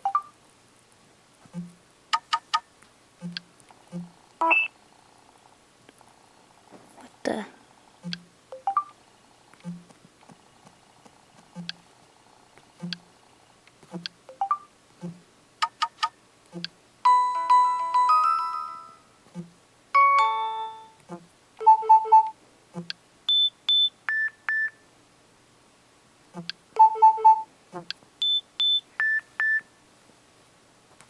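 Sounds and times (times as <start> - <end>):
soft clicks: 1.5 - 4.4, 8.0 - 11.8, 12.5 - 14.2
electronic ringtone beeps: 4.4 - 4.7, 8.5 - 8.9, 14.3 - 14.7, 21.6 - 22.3, 23.3 - 24.8, 26.8 - 27.5, 28.2 - 29.7.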